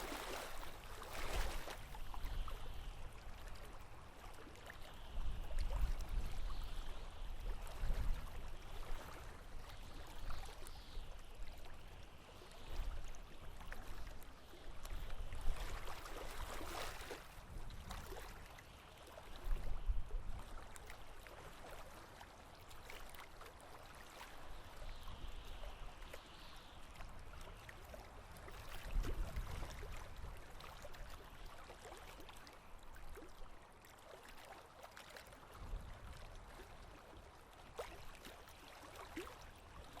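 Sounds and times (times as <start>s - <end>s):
water swashing: 0.0s - 2.0s
water lapping against boat: 0.0s - 40.0s.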